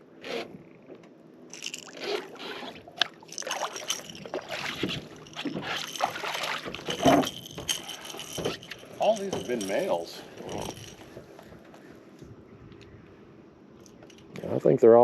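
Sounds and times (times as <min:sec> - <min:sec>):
water splashing against boat: 0:02.0 - 0:11.2.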